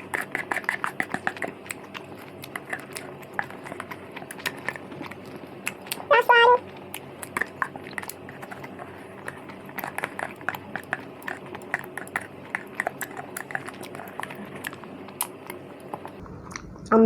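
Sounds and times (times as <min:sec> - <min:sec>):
chewing mouth clicks and smacks: 0:00.0 - 0:16.7
faint steady hum: 0:00.0 - 0:17.0.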